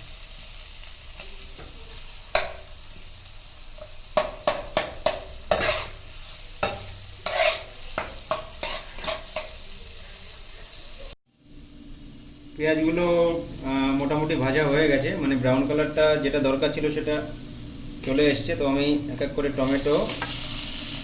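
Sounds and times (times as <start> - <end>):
onions sizzling in oil: 0.0 - 21.0
spatula scraping a pan: 3.8 - 9.7.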